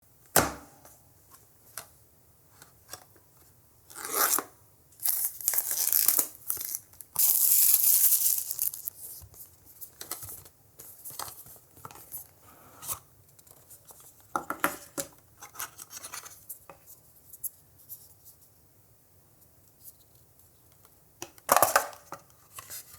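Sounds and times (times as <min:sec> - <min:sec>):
packaging tearing and rustling: 0:05.0 - 0:08.9.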